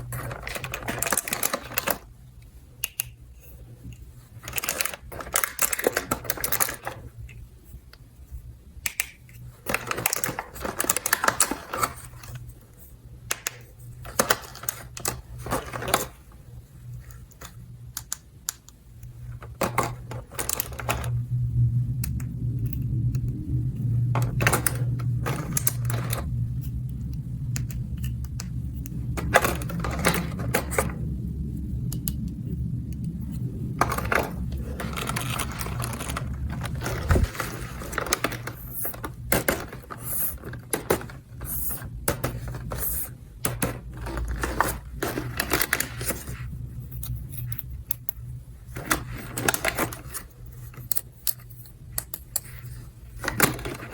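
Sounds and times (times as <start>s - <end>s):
plastic toy pieces clicking: 0.0s - 2.1s, 4.4s - 7.0s, 8.8s - 12.3s, 19.4s - 21.1s, 24.2s - 26.3s, 33.8s - 46.4s, 48.8s - 53.9s
steady low hum: 0.0s - 53.9s.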